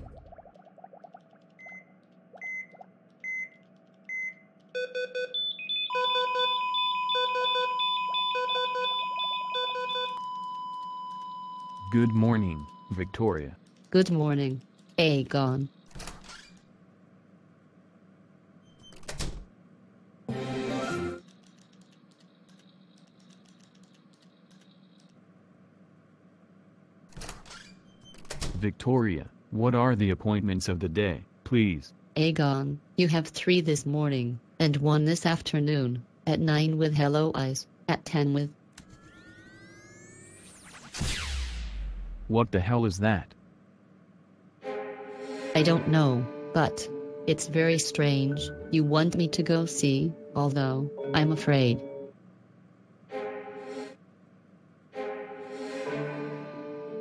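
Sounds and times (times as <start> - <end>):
typing on computer keyboard: 21.2 - 25.2
steady held electronic tones: 38.8 - 41.0
burst of noise: 39.9 - 42.3.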